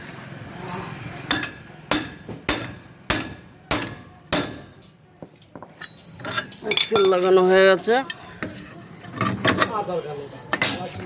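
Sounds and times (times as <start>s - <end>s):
hammer striking steel axle: 1.3s - 4.8s.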